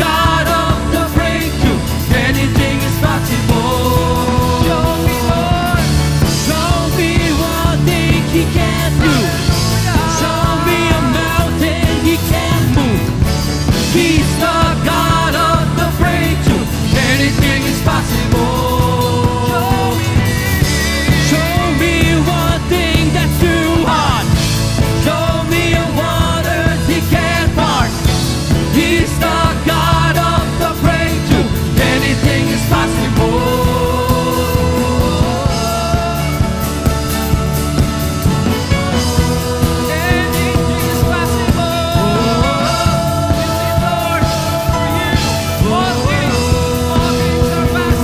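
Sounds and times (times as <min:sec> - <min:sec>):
rock band playing: 0:00.0 - 0:48.0
voices singing: 0:00.0 - 0:48.0.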